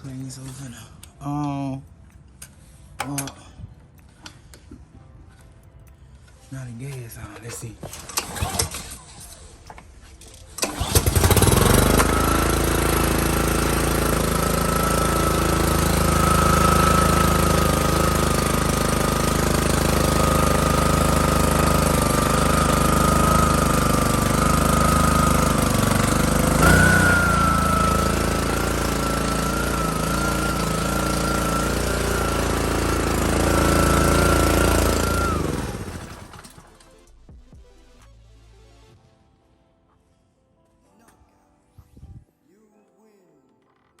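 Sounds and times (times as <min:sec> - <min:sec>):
pressure washer engine running: 0:07.9 - 0:09.0, 0:10.6 - 0:36.8.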